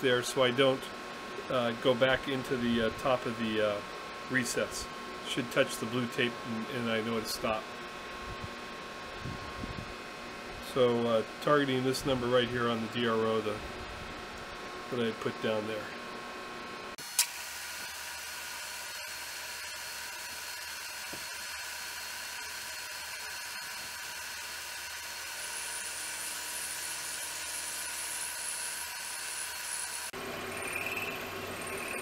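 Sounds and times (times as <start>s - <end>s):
high machine whine: 0.0s - 32.0s
milling machine cutting metal: 17.0s - 32.0s.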